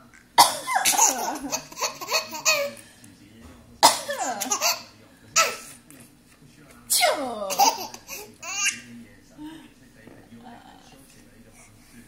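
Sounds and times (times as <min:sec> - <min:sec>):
baby laughing: 0:00.8 - 0:02.8, 0:04.2 - 0:05.7, 0:07.5 - 0:08.9.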